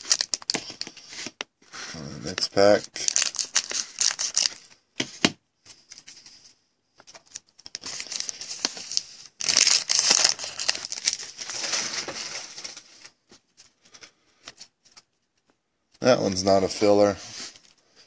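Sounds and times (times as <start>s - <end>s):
wrapper tearing and crinkling: 0.0s - 0.9s, 2.4s - 4.6s, 7.7s - 13.1s.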